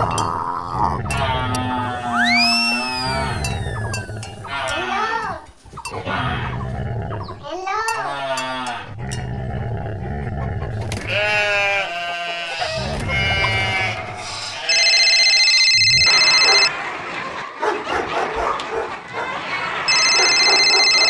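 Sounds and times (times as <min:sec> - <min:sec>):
high electronic tone: 0:01.9 - 0:04.7
farm animals bleating: 0:10.9 - 0:15.0.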